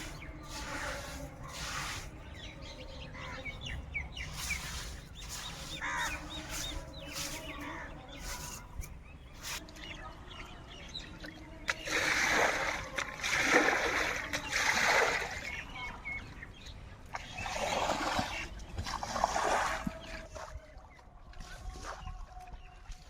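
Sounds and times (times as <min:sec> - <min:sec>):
heavy water splashes: 0:00.0 - 0:09.6, 0:11.8 - 0:15.5, 0:17.5 - 0:20.4.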